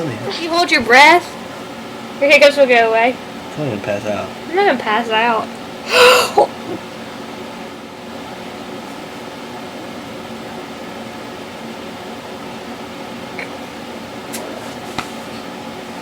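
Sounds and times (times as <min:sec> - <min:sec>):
appliance humming: 0:00.0 - 0:16.0.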